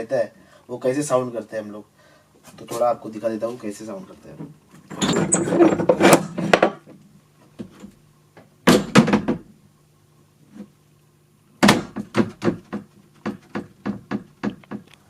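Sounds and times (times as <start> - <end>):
door bangs and rattles: 8.6 - 9.5, 11.6 - 14.8.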